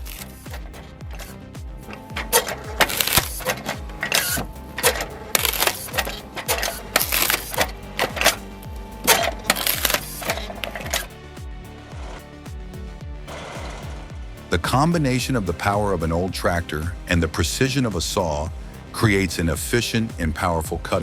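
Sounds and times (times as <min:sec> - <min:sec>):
wood-cutting machine clacking: 0:00.0 - 0:11.1
background music with steady beat: 0:00.0 - 0:21.0.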